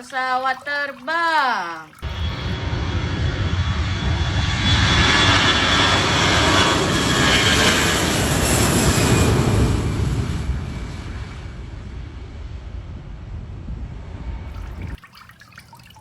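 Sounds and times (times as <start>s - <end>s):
airplane engine noise: 2.1s - 14.5s.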